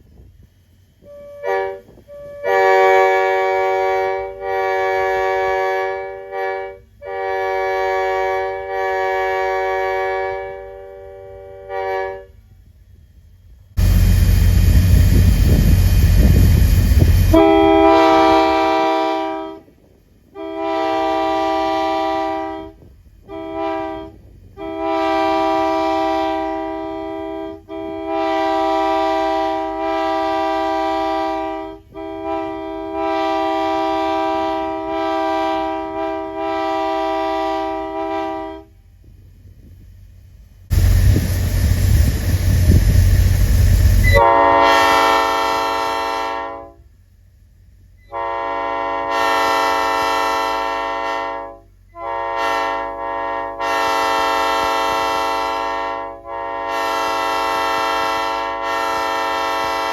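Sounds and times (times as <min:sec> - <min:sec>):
locomotive air horn blasts: 0:01.0 - 0:12.5, 0:13.8 - 0:38.8, 0:43.9 - 0:46.9, 0:48.0 - 0:59.9
rush of air: 0:13.8 - 0:17.8, 0:40.7 - 0:44.2.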